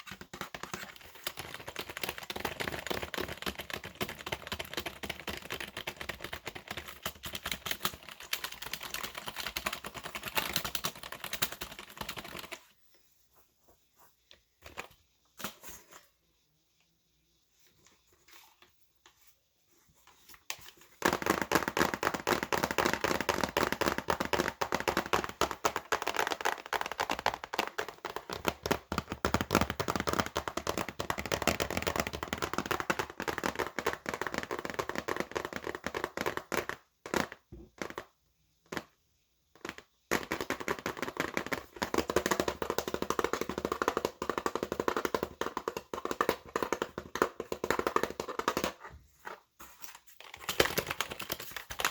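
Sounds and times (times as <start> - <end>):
computer keyboard typing: 0.1 - 12.6, 50.3 - 51.9.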